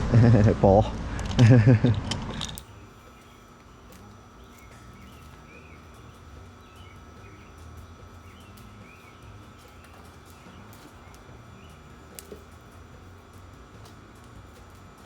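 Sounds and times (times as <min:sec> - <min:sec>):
birds chirping: 0:00.0 - 0:15.0
low background rumble: 0:00.0 - 0:15.0.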